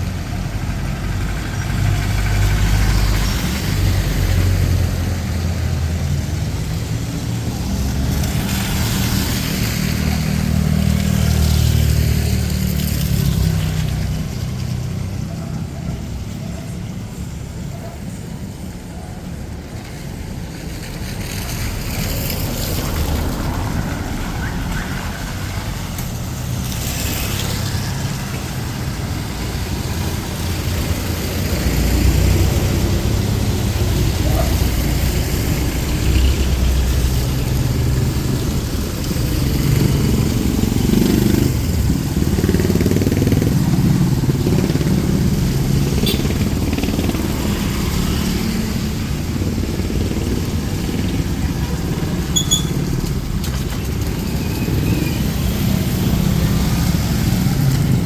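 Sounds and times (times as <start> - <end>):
motorcycles passing: 0.0 - 58.0
vehicle engines passing: 0.0 - 58.0.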